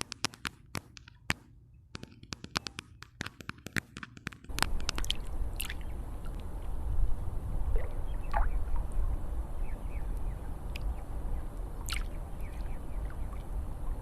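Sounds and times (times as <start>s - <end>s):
sharp clicks: 0.0s - 6.5s
water rushing with low rumble: 4.5s - 14.0s.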